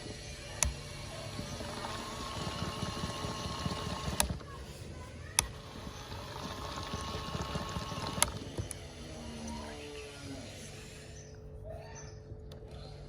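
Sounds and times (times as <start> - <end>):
sharp clicks: 0.0 - 9.6
small motor whining: 0.0 - 11.4.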